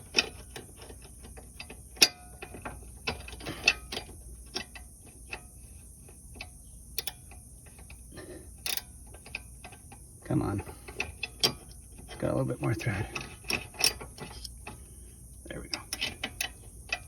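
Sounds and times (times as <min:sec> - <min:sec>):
metallic clicks of wrench: 0:06.4 - 0:08.0, 0:08.6 - 0:10.0, 0:15.7 - 0:17.0.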